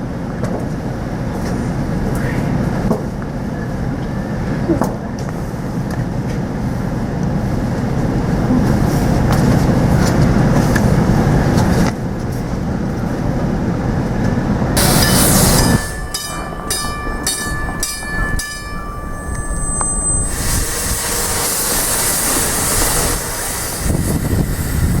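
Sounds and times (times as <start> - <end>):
train rumbling: 0.0 - 25.0
train wheel clacks: 14.2 - 25.0
wheel squeal: 14.8 - 25.0.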